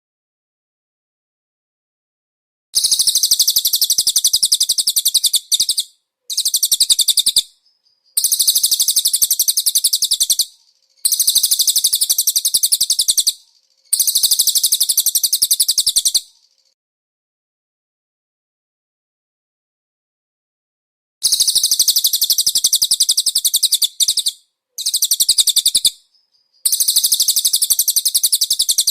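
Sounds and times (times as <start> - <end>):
songbird rattling trills: 2.8 - 16.8, 21.2 - 28.9.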